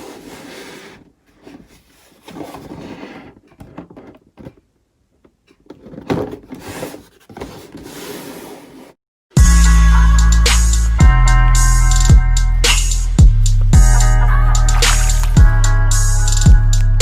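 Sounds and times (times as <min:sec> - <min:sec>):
shoebox rustling and knocks: 0:05.7 - 0:08.6.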